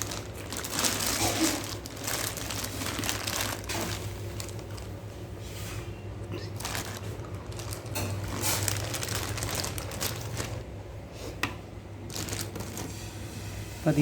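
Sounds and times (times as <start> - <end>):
packaging rustling: 0.0 - 5.4, 6.3 - 10.8, 12.0 - 13.2
steady low hum: 0.0 - 14.0.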